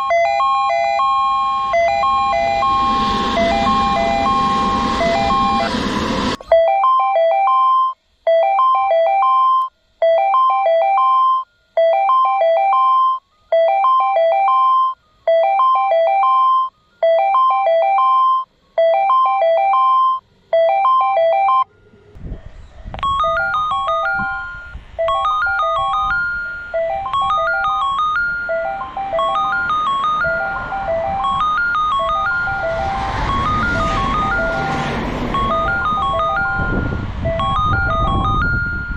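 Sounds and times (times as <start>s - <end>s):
electronic multi-note chime: 0.0s - 7.6s, 23.0s - 38.9s
higher chime melody: 0.0s - 7.7s, 23.0s - 38.9s
station background noise: 0.0s - 7.8s, 13.6s - 38.9s.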